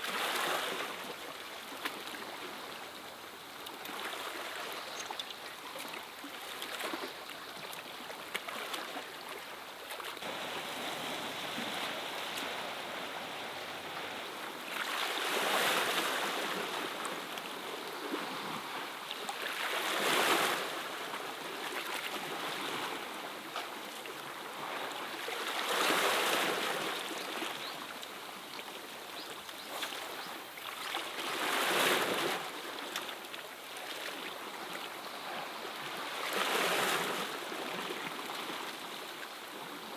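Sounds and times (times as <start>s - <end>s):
waves washing against rocks: 10.2s - 17.3s.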